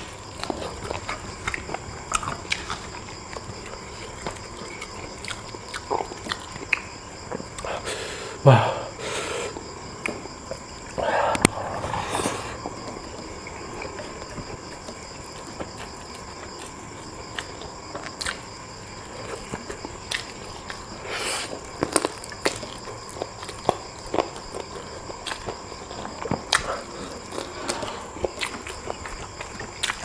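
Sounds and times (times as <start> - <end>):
wet chewing and mouth clicks: 0.0 - 7.7, 9.6 - 30.0
breathy slurp: 11.0 - 12.8.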